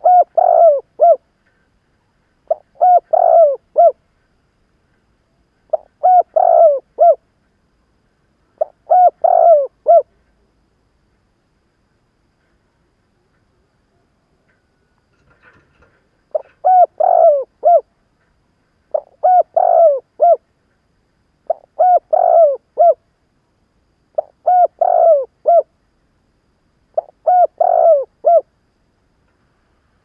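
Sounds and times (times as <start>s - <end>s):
dove cooing: 0.0s - 1.2s, 2.5s - 4.0s, 5.7s - 7.2s, 8.6s - 10.1s, 16.3s - 17.9s, 18.9s - 20.4s, 21.5s - 23.0s, 24.2s - 25.7s, 26.9s - 28.5s.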